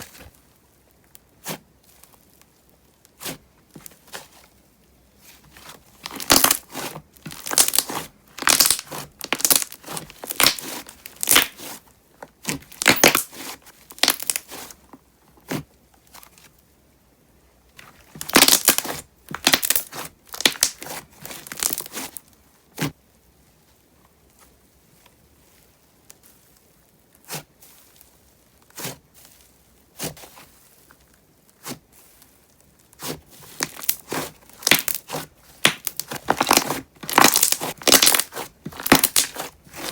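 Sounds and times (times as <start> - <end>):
slime squeezed by hand: 6.1 - 11.8, 12.5 - 14.7, 33.0 - 39.9.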